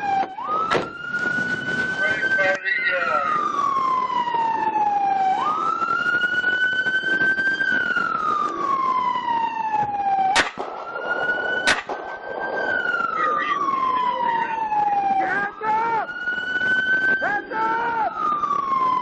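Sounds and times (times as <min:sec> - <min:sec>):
police siren wailing: 0:00.0 - 0:19.0
sharp cracks: 0:09.8 - 0:14.5.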